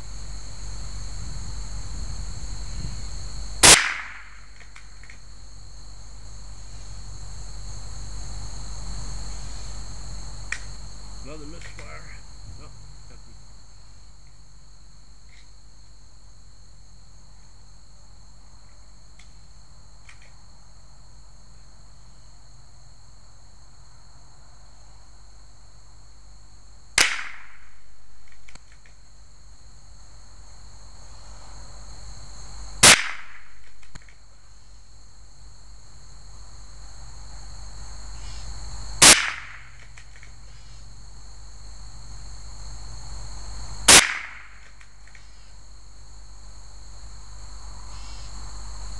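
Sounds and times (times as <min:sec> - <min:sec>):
insects chirring: 0:00.0 - 0:48.9
rifle shots: 0:03.6 - 0:04.3, 0:32.8 - 0:33.5, 0:39.0 - 0:39.6, 0:43.9 - 0:44.5.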